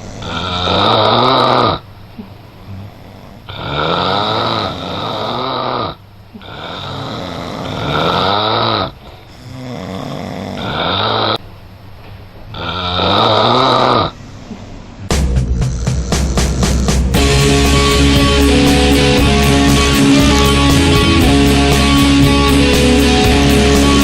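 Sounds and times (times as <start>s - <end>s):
man snoring: 0.0s - 1.8s, 2.7s - 11.4s, 12.6s - 14.2s, 15.1s - 24.0s.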